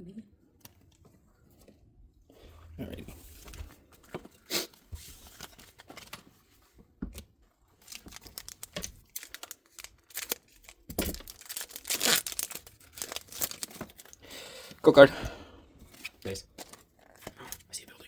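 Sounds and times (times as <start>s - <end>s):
foil wrapper tearing: 7.8s - 14.2s
foil wrapper crinkling: 7.8s - 14.3s.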